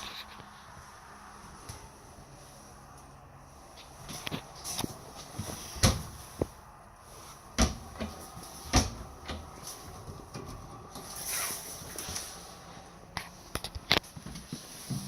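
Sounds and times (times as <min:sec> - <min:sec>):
cabinet doors opening and shutting: 0:05.6 - 0:06.2, 0:07.5 - 0:09.5.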